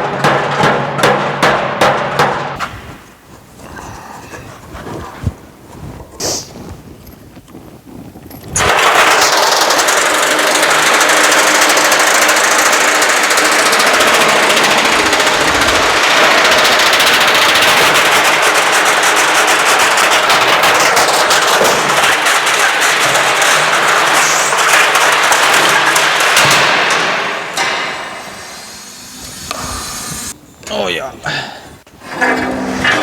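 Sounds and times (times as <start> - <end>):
washing machine clattering and banging: 0.0 - 2.6, 8.6 - 28.5.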